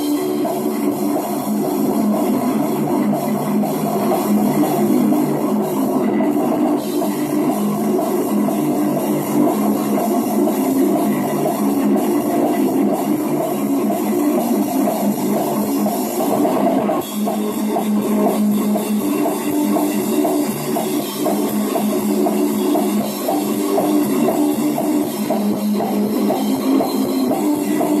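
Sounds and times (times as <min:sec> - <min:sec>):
drum kit: 0:00.0 - 0:28.0
electric guitar: 0:00.0 - 0:28.0.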